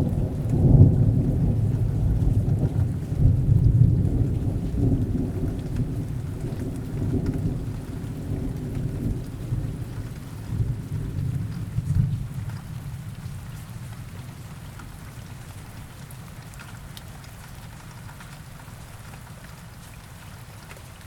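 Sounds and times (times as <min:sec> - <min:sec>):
rolling thunder: 0:00.0 - 0:13.4
steady rain: 0:00.0 - 0:21.0.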